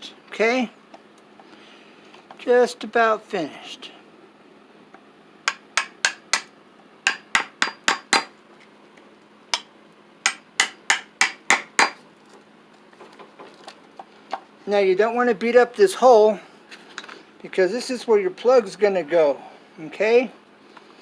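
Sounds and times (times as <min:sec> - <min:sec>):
hammer tapping wood: 0:05.5 - 0:06.5, 0:07.1 - 0:08.3, 0:09.6 - 0:12.0.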